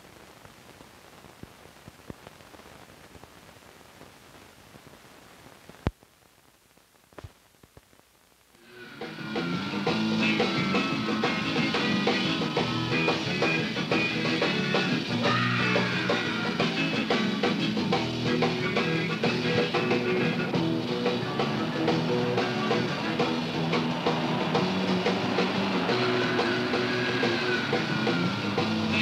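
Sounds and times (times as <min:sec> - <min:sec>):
rock music with guitar and drums: 0:08.6 - 0:29.0.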